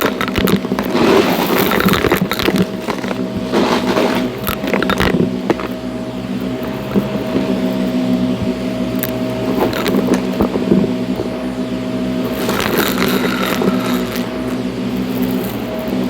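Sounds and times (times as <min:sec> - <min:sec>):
debris rattling up vacuum: 0:00.0 - 0:05.8, 0:12.3 - 0:14.6
vacuum cleaner motor hum: 0:00.0 - 0:16.0.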